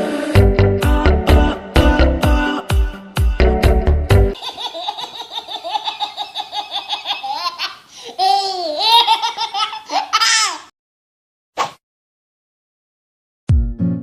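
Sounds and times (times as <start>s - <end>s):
high-pitched laughter: 4.4s - 10.7s.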